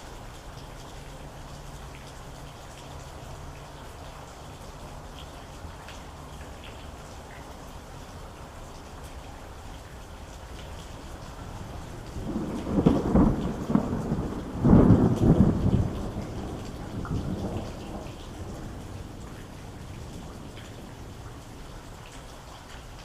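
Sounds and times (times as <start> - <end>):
steady rain: 0.0 - 23.0
thunder rolling: 12.2 - 19.2.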